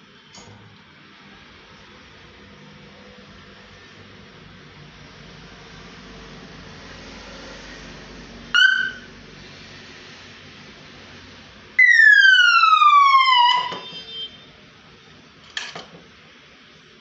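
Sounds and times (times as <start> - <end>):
short alarm beeps: 8.6 - 9.1, 13.4 - 14.4
siren tone falling in pitch: 8.6 - 9.1, 11.8 - 14.0.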